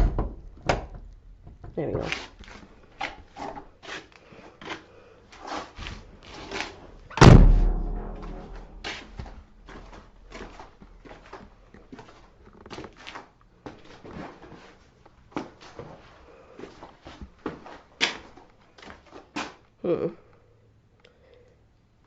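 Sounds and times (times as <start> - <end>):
heavy ringing thump: 7.2 - 9.3.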